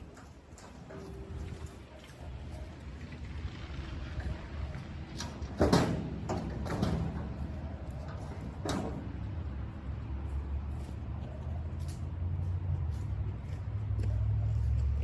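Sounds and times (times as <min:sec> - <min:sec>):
low steady rumble: 0:00.0 - 0:15.0
clattering knocks: 0:05.3 - 0:09.2.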